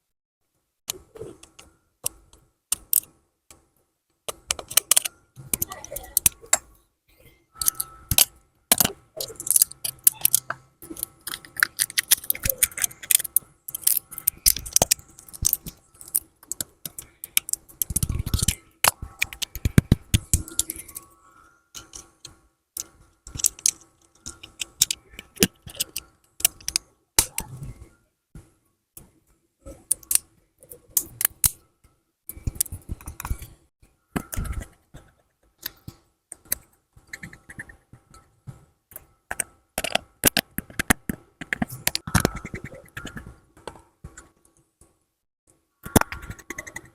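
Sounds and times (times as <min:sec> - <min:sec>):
tools clicking and tapping: 0:04.3 - 0:06.8, 0:07.6 - 0:21.1, 0:21.8 - 0:27.5, 0:34.2 - 0:45.0.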